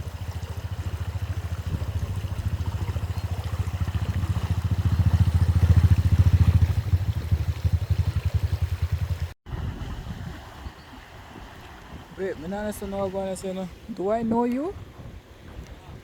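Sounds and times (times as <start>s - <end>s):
vehicle engine pulsing: 0.0s - 9.4s.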